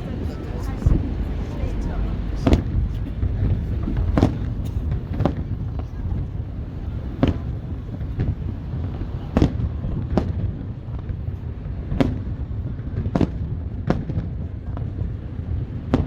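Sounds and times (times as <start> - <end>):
low rumble: 0.0 - 11.8
fireworks bangs: 0.0 - 16.0.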